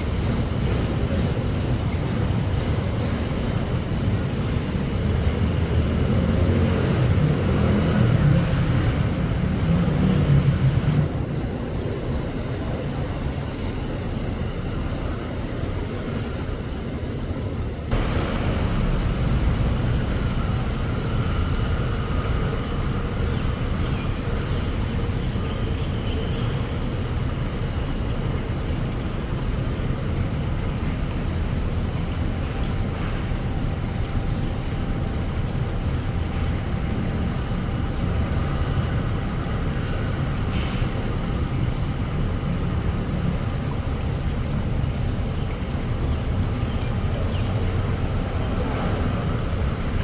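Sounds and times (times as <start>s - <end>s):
gusty wind: 0.0s - 25.6s
heavy rain: 0.0s - 50.0s.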